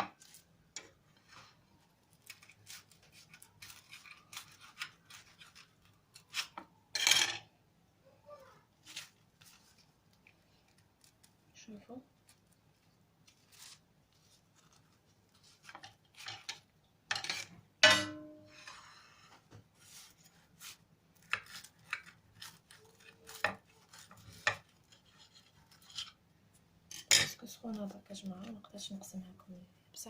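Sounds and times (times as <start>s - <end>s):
utensils tapping and scraping: 21.3s - 26.2s.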